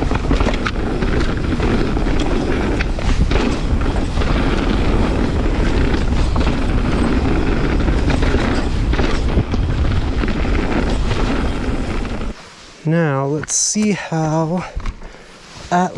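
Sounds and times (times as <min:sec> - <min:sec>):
bike clicks and rattles: 0:00.0 - 0:12.4
tyres rolling over dirt: 0:00.0 - 0:12.4
wind on microphone: 0:00.0 - 0:12.4.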